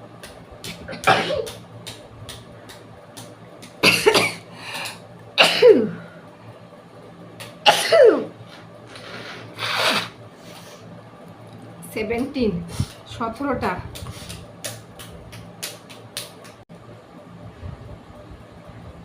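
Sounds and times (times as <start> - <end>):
person sneezing: 0.7 - 1.6, 9.6 - 10.2.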